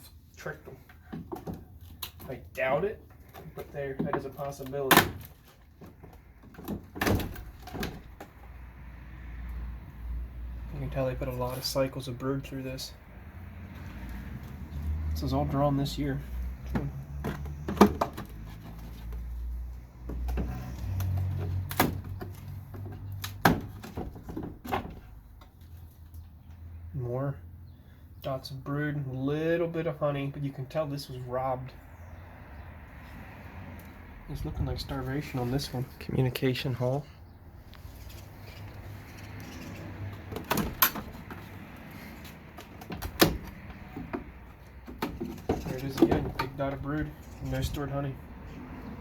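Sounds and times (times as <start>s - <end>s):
wood knocking and scraping on wood: 0.6s - 2.5s, 3.1s - 8.5s, 16.4s - 25.8s, 37.7s - 47.8s.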